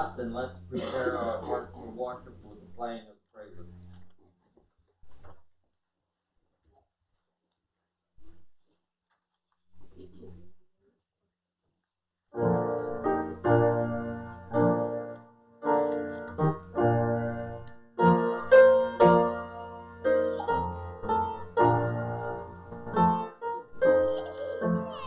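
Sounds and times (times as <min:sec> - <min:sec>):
piano playing chords: 0:12.4 - 0:25.0.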